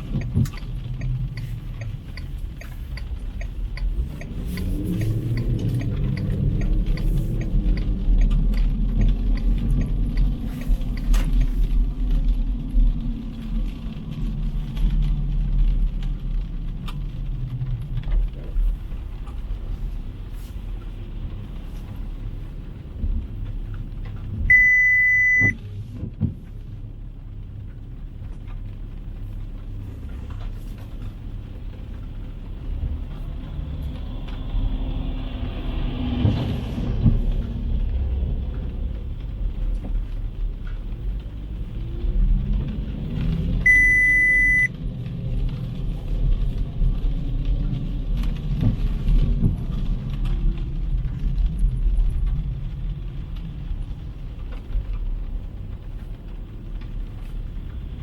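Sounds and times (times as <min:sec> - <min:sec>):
traffic rumble: 0:00.0 - 0:58.0
high electronic beep: 0:24.5 - 0:25.6, 0:43.7 - 0:44.7
vehicle passing with hiss: 0:33.4 - 0:38.5.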